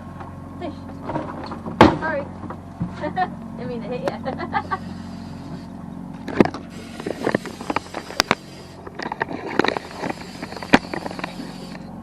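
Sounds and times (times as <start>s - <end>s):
boat motor humming: 0.0s - 12.0s
sharp knocks and clatters: 0.9s - 3.0s.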